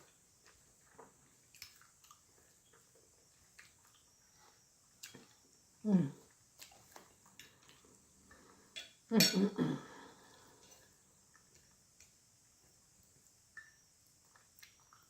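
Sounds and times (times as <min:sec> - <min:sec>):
cutlery clinking on a dish: 0:08.8 - 0:09.5.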